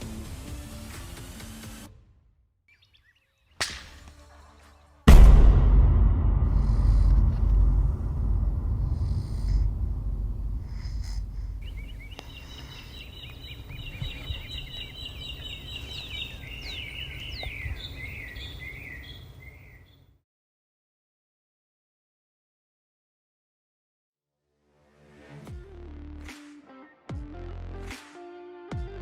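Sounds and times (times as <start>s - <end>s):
small birds chirping: 2.7s - 4.9s, 9.0s - 20.1s
low rumble: 5.1s - 12.9s.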